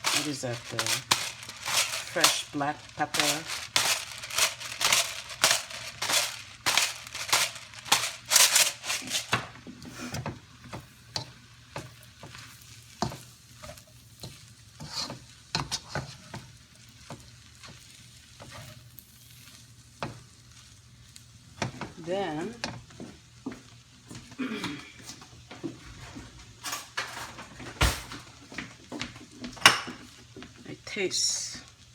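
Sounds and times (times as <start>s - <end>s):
spatula scraping a pot: 0.0s - 10.2s, 11.1s - 19.6s
light sizzle: 0.0s - 31.9s.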